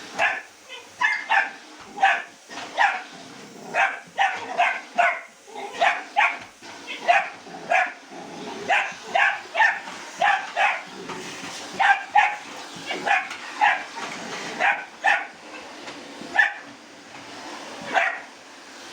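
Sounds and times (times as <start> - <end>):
dog barking: 0.2 - 3.1, 3.7 - 8.0, 8.7 - 10.9, 11.8 - 13.9, 14.6 - 15.4, 16.3 - 16.7, 17.9 - 18.3.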